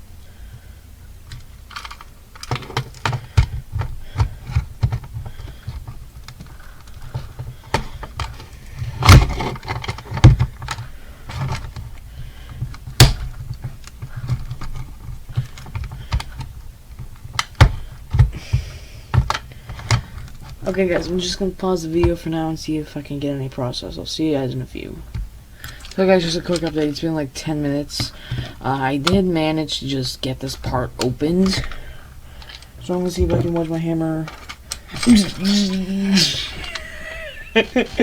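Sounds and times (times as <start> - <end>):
hard plastic clicking and rattling: 1.2 - 22.4, 24.8 - 38.0
loud knocks on plastic casing: 12.9 - 14.2.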